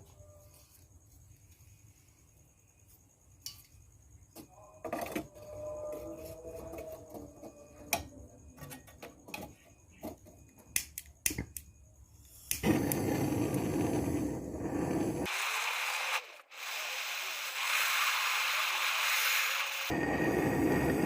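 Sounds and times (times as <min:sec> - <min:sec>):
loud steady rushing hiss: 0:12.6 - 0:21.0.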